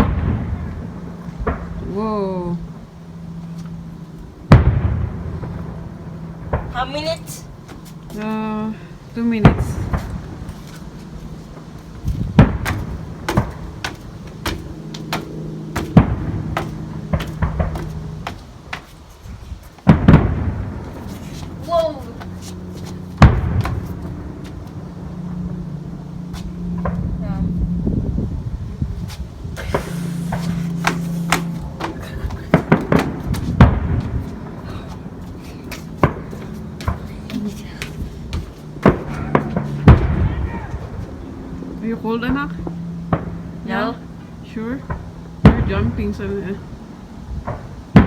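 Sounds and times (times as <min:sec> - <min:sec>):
fireworks bangs and cracks: 0:00.0 - 0:01.7, 0:04.5 - 0:05.7, 0:15.9 - 0:16.4, 0:19.8 - 0:21.0, 0:23.2 - 0:23.8, 0:38.4 - 0:40.5
steady low hum: 0:00.0 - 0:48.0.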